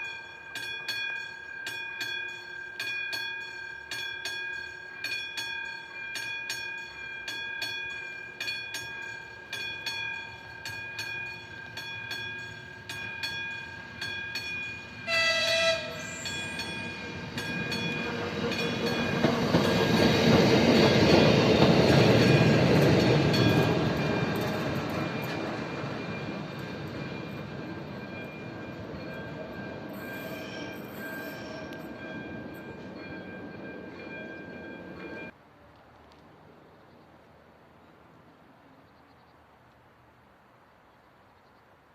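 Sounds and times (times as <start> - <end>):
level-crossing warning bell: 0.0 - 35.4
train rumble passing: 8.2 - 35.7
locomotive horn blast: 15.0 - 16.4.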